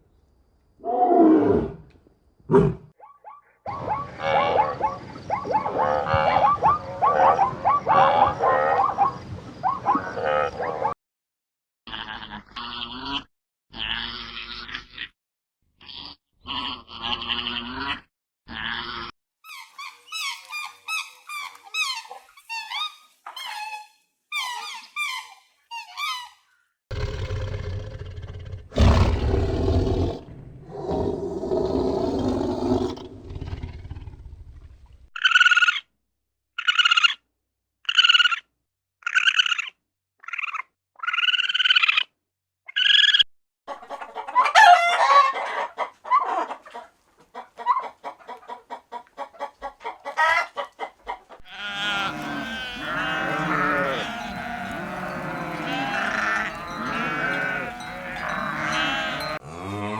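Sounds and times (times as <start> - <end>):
short high animal calls: 51.5 - 59.4
squawks: 51.5 - 59.4
long deep animal call: 51.5 - 59.9.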